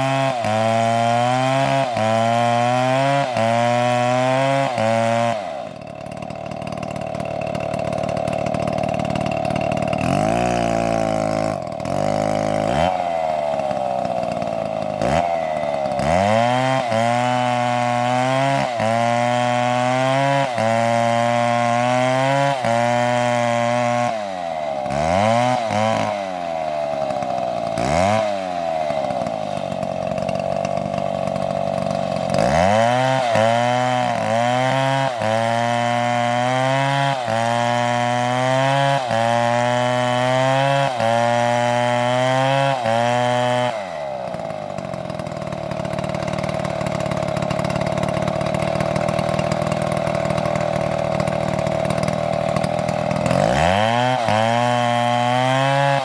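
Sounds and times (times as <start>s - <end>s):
chainsaw revving: 0.0s - 56.0s.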